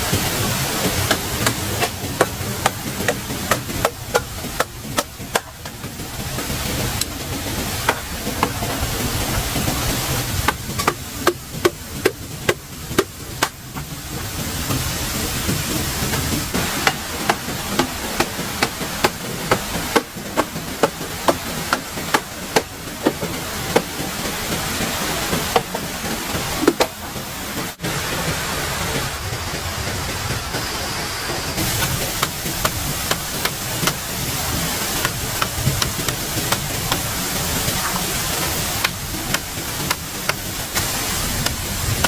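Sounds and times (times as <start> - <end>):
hand tool striking: 0.0 - 14.3, 16.1 - 24.7, 31.6 - 42.0
steady rushing hiss: 0.0 - 42.0.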